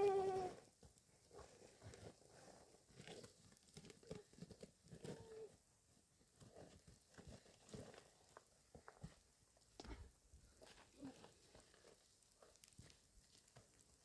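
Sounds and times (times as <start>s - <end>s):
faint rustles and clicks: 0.0s - 14.0s.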